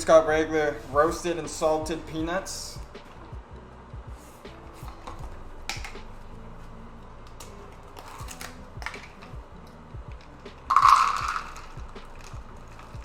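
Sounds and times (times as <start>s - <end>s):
peanuts clicking and rattling: 10.2s - 13.0s
peanuts pouring: 10.7s - 13.0s.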